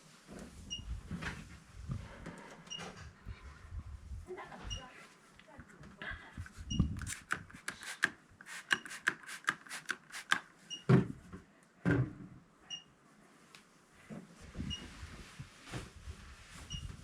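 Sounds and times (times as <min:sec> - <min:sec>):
sharp clicks and taps: 0:06.4 - 0:10.5.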